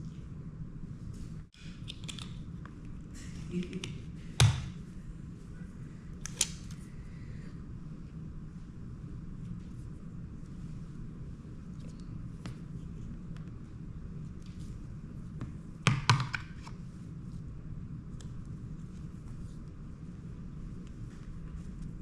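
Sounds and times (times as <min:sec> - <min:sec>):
steady low hum: 0:00.0 - 0:22.0
hard object tapping and knocking: 0:15.9 - 0:16.4.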